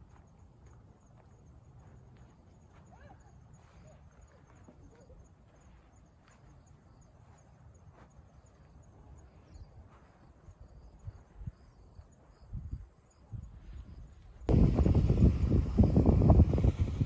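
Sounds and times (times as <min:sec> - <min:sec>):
wind on microphone: 0:12.4 - 0:17.0.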